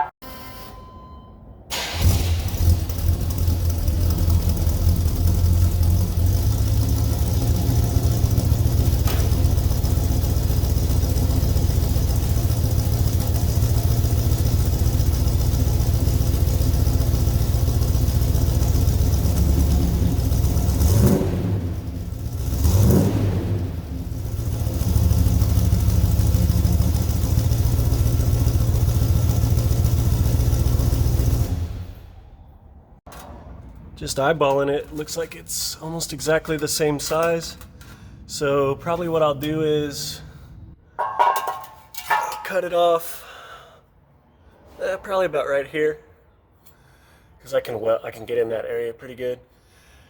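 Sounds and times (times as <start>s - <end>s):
car engine idling and revving: 1.7s - 33.0s.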